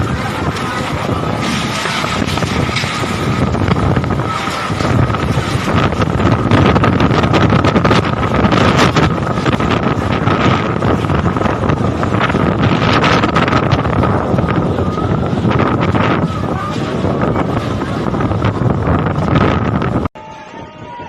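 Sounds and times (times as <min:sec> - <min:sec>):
wind gusts on microphone: 0:00.0 - 0:21.0.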